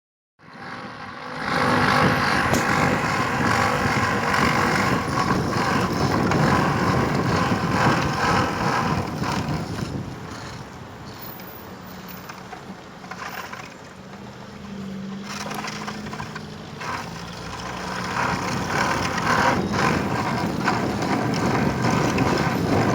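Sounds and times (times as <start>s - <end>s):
motorcycle engine running: 0.4s - 11.2s, 12.2s - 22.9s.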